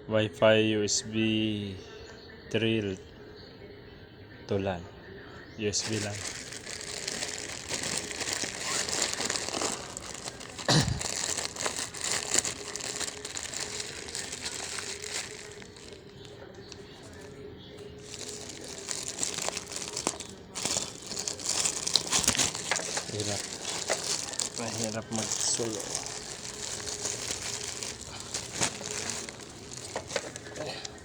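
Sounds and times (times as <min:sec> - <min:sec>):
plastic packaging crinkling: 0:05.8 - 0:31.0.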